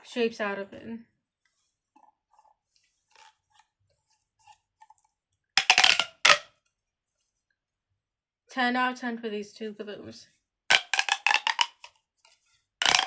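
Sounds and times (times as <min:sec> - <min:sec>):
plastic pop tube clicking: 0:05.6 - 0:06.5, 0:10.7 - 0:12.0.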